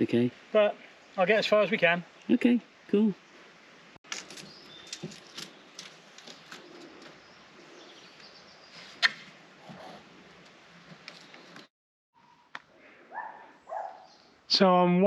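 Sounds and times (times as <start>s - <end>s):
steady background hiss: 0.0s - 11.6s
faint bird chirps: 4.3s - 9.1s, 13.1s - 14.4s.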